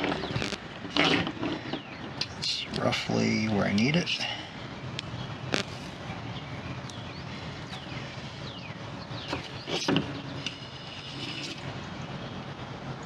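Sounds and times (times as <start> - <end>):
sharp clicks: 0.1 - 0.6, 5.0 - 5.8.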